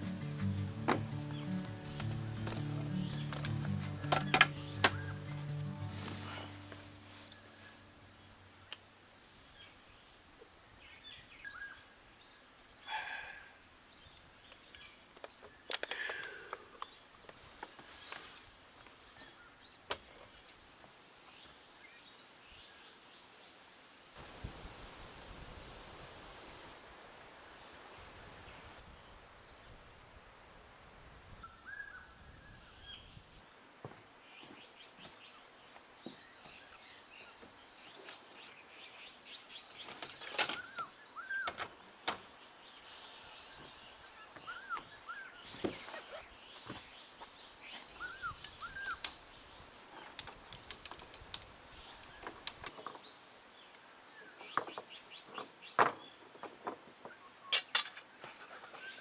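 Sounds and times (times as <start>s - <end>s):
birds chirping: 0.0s - 10.2s, 36.0s - 56.2s.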